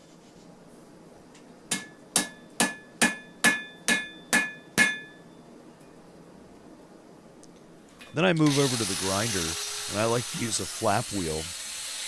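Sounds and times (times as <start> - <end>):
hammer striking steel on anvil: 1.7 - 5.3.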